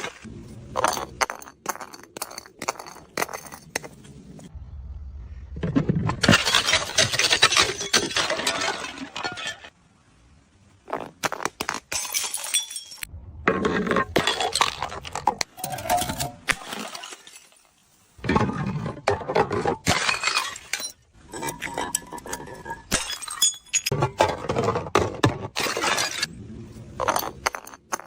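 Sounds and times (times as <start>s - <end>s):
glass bottles smashing: 0.7s - 3.8s, 6.2s - 9.7s, 11.0s - 13.1s, 13.9s - 26.3s, 27.0s - 28.0s
glass shards clinking: 6.3s - 9.7s, 11.9s - 13.1s, 19.9s - 24.0s, 25.6s - 26.3s, 27.0s - 28.0s.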